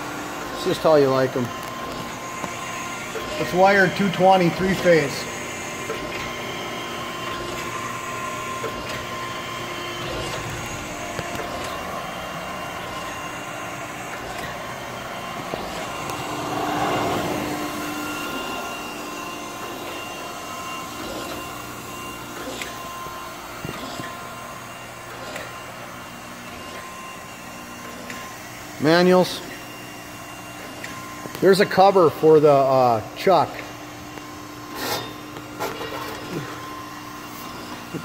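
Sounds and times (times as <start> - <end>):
surface grinder humming: 0.0 - 29.5.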